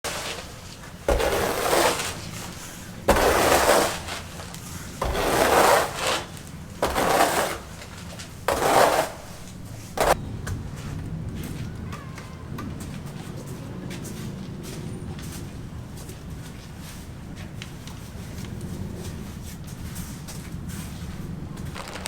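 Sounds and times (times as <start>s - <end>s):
rough scraping strokes: 0.0s - 10.2s.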